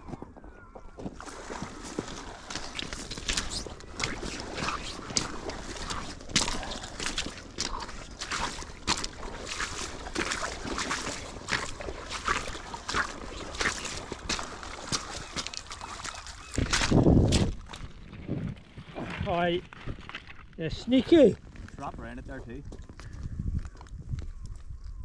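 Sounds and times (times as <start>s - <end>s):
river water splashing: 1.2s - 19.2s.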